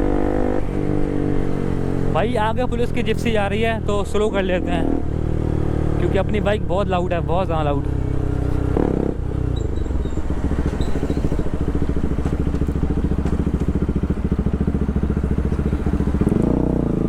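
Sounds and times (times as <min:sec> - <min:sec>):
motorcycle engine idling: 0:06.3 - 0:17.0.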